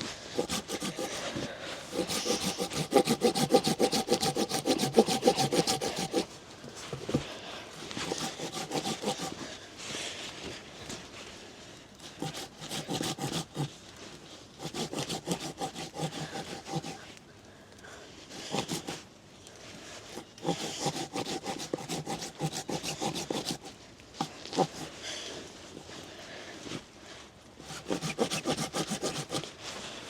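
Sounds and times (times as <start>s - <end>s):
hand saw cutting wood: 0.0s - 9.5s, 12.0s - 13.8s, 14.6s - 17.1s, 18.3s - 19.0s, 20.0s - 25.0s, 27.6s - 29.6s.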